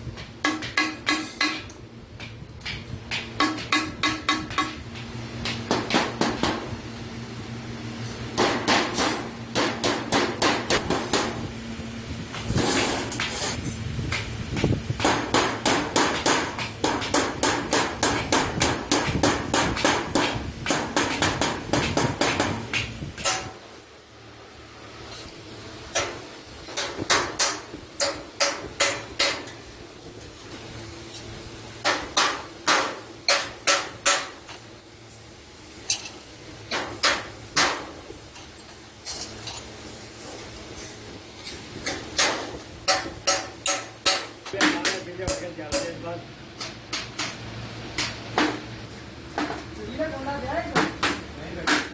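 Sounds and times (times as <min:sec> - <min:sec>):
hammer striking iron sheet: 0:00.4 - 0:01.8, 0:02.7 - 0:04.8, 0:05.4 - 0:06.8, 0:08.4 - 0:11.5, 0:12.4 - 0:23.7, 0:26.8 - 0:29.6, 0:31.8 - 0:34.6, 0:36.7 - 0:38.0, 0:41.8 - 0:46.0.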